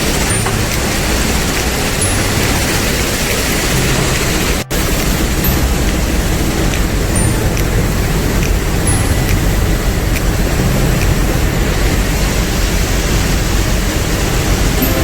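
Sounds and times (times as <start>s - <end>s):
vibrating screen mechanical noise: 0.0s - 12.2s.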